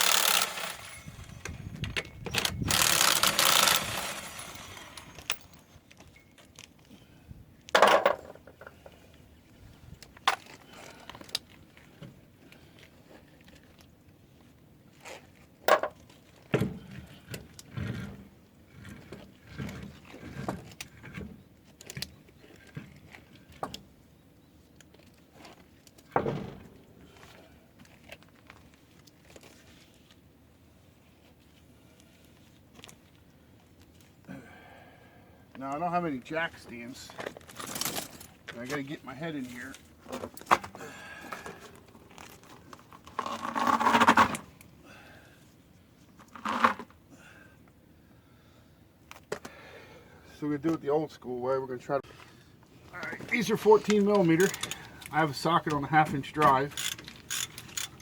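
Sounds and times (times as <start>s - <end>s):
metal tools clinking and knocking: 0.0s - 6.3s, 7.8s - 8.8s, 15.7s - 16.0s, 53.5s - 55.2s.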